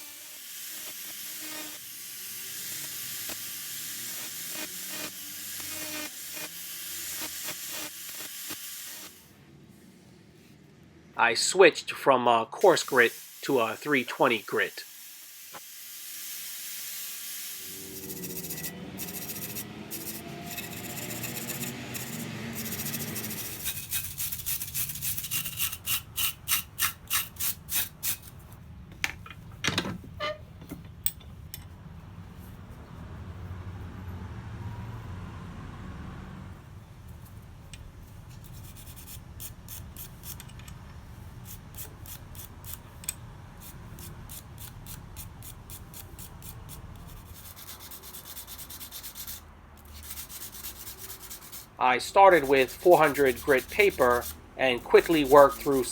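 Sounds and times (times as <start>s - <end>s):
sandpaper scraping steel blade: 16.2s - 28.4s, 38.3s - 40.6s, 41.4s - 42.9s, 43.6s - 55.9s.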